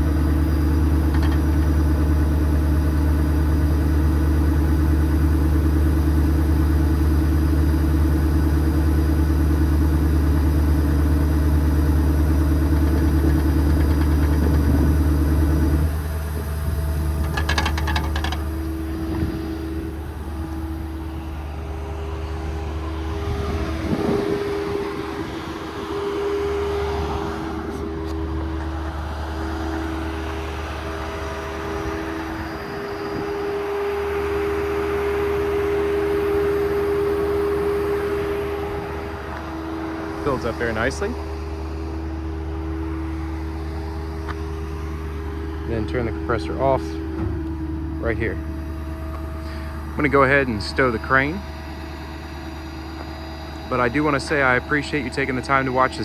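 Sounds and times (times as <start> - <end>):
air compressor humming: 0.0 - 56.0
rattle of clicks: 0.5 - 2.2, 11.8 - 19.7.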